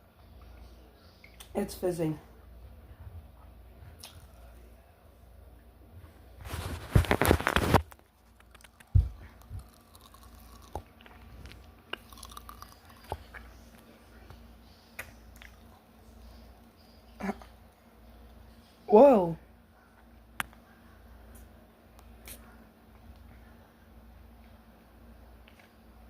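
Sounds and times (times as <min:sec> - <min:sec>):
person crunching candy: 0:06.8 - 0:10.9, 0:11.9 - 0:13.3.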